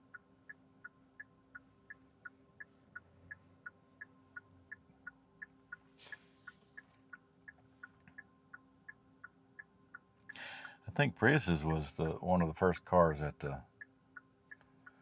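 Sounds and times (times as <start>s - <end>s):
turn signal ticking: 0.0s - 10.8s, 11.6s - 15.0s.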